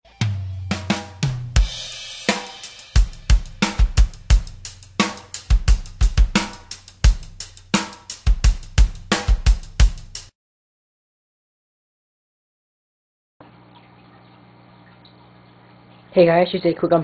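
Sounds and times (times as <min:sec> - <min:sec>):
drum beat: 0:00.2 - 0:10.3
low bass line: 0:03.0 - 0:07.6.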